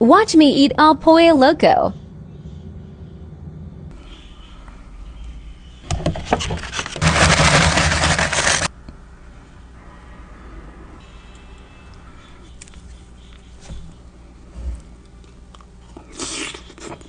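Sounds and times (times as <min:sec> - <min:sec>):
food packaging crinkling: 0:06.3 - 0:08.7.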